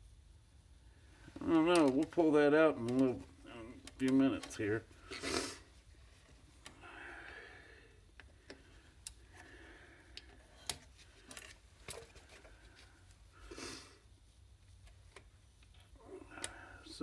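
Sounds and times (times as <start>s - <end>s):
light rustling of parts: 1.1s - 7.4s, 8.0s - 13.4s.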